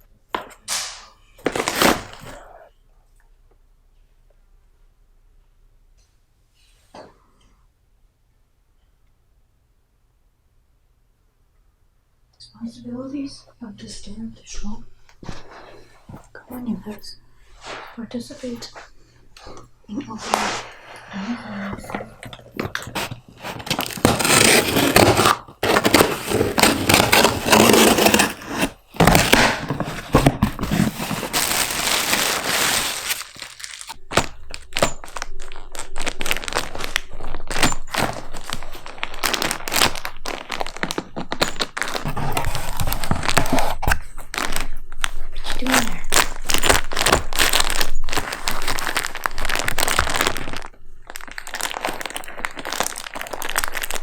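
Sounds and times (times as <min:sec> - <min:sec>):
cardboard box being torn: 0:01.4 - 0:02.4, 0:22.7 - 0:34.2, 0:34.8 - 0:44.6, 0:46.0 - 0:54.0.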